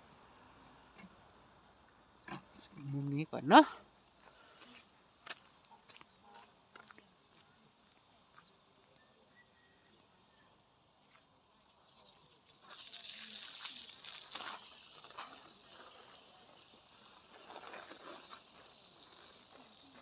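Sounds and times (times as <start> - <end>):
faint bird chirps: 4.6 - 5.2, 7.5 - 10.7
water spraying from garden hose: 11.7 - 20.0.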